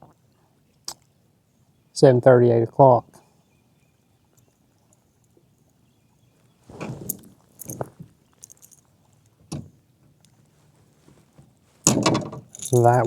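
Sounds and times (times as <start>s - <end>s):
short rattling knocks: 11.8s - 13.0s.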